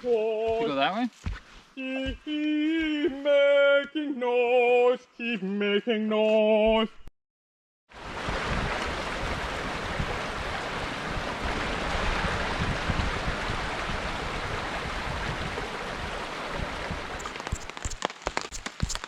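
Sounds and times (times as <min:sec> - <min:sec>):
water rushing: 0:07.9 - 0:19.0
raindrops pattering: 0:12.9 - 0:19.0.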